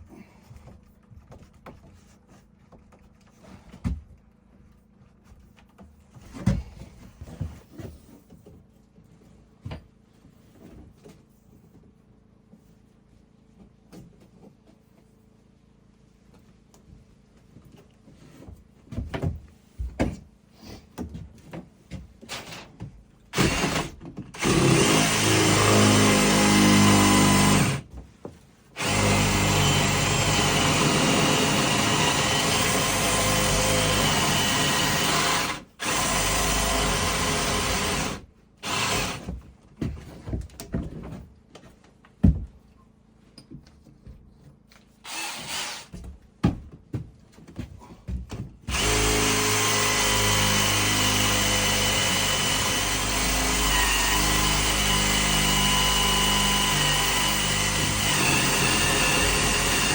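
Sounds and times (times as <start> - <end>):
power drill drilling into wood: 23.3 - 27.8, 28.8 - 39.3, 45.0 - 45.9, 48.7 - 59.9.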